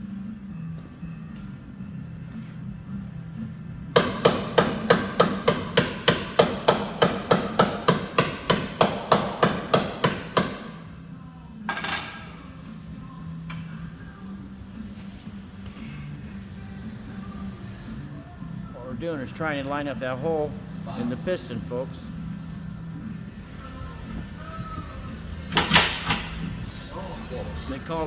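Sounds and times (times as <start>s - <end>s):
hammer striking metal: 3.9s - 10.8s.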